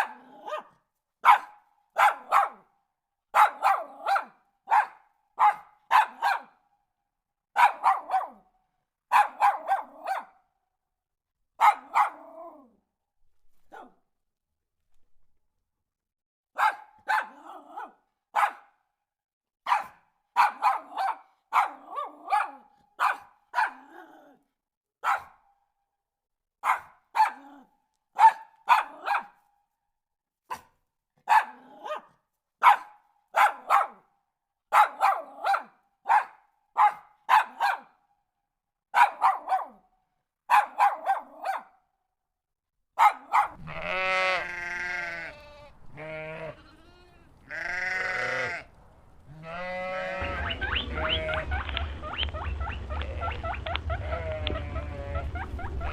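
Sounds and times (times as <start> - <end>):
dog barking: 0.0 - 6.7, 7.5 - 10.6, 11.6 - 12.8, 13.6 - 14.1, 16.5 - 18.9, 19.6 - 24.4, 25.0 - 25.6, 26.6 - 29.5, 30.4 - 38.1, 38.9 - 41.9, 43.0 - 45.3, 50.2 - 55.9
sheep bleating: 43.6 - 48.7, 49.3 - 55.9.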